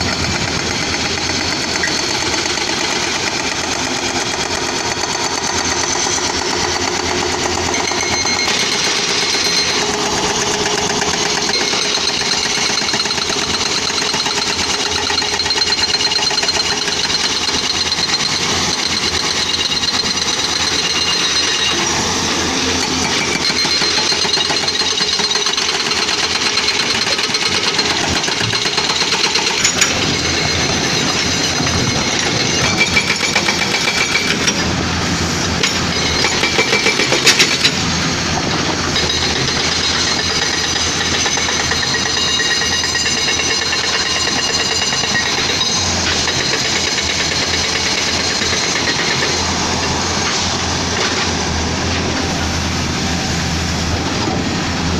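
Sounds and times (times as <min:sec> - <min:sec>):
excavator diesel engine under load: 0:00.0 - 0:54.9
rapid metallic knocking and rattling: 0:23.0 - 0:34.7.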